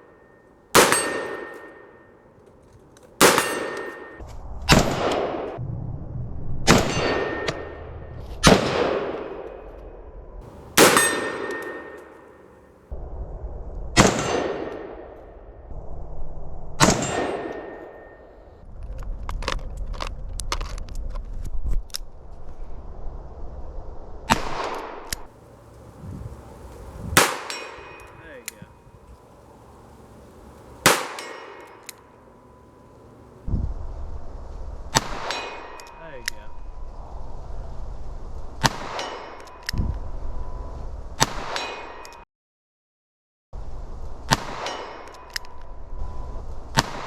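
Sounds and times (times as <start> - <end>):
rifle shots: 0.8 - 1.7, 3.2 - 4.1, 10.4 - 12.6, 25.4 - 33.5
steel target clanging: 0.8 - 2.0, 10.4 - 12.7, 25.4 - 33.5.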